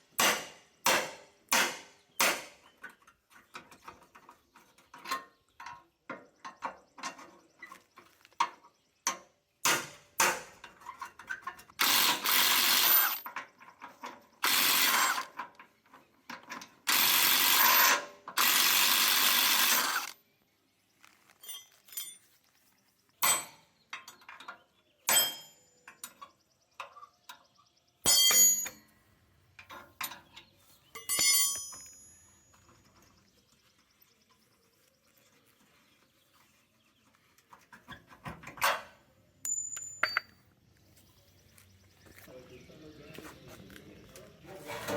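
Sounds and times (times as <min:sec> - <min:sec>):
power tool bursts: 0:11.8 - 0:13.3, 0:14.4 - 0:15.4, 0:16.9 - 0:20.2
metal parts clinking: 0:21.2 - 0:22.4, 0:29.6 - 0:33.0, 0:39.4 - 0:40.4
hand tools knocking on metal: 0:28.1 - 0:28.9, 0:31.0 - 0:32.4, 0:39.5 - 0:40.4.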